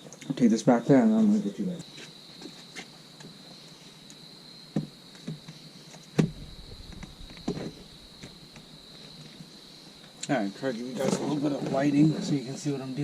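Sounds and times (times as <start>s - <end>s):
knocks and thumps: 4.7s - 8.7s.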